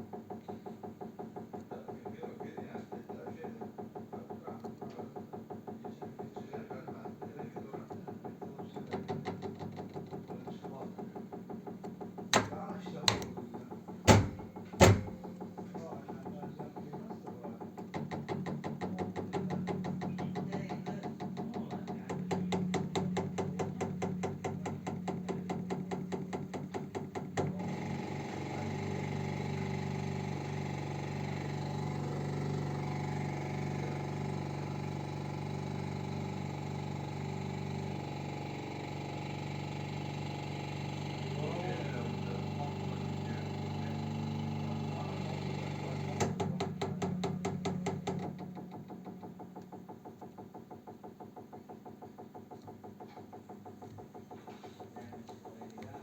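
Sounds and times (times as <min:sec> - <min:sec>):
loud knock: 0:11.3 - 0:27.6.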